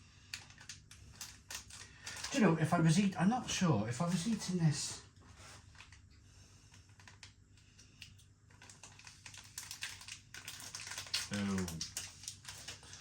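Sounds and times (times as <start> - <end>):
packet handling: 0.4 - 3.3, 6.6 - 13.0.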